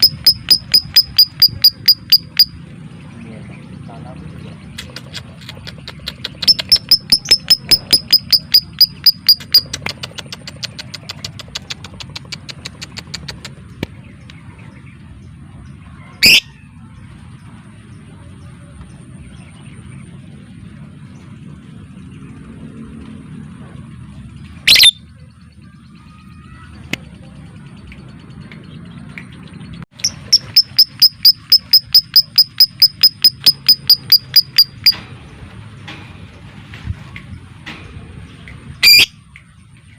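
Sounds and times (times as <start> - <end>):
lovebird chattering: 0.0 - 2.5, 4.7 - 13.9, 30.0 - 35.0
shrill bird calls: 0.0 - 2.5, 6.3 - 9.8, 24.7 - 25.0.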